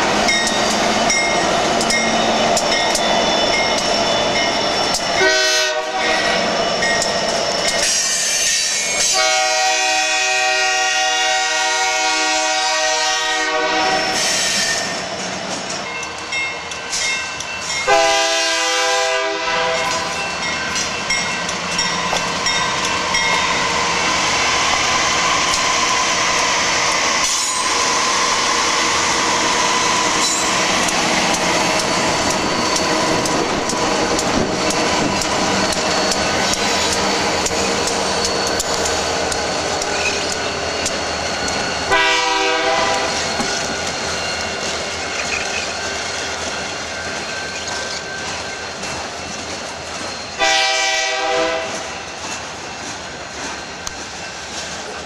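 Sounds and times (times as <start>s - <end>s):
train wheels rumbling: 0.0s - 55.0s
locomotive air horn blasts: 5.2s - 6.4s, 9.0s - 14.2s, 17.9s - 20.1s, 41.9s - 43.2s, 50.4s - 51.9s.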